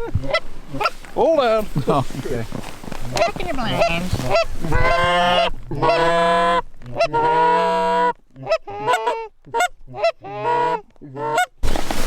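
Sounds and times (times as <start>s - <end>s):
geese honking: 0.2s - 1.1s, 3.0s - 11.6s.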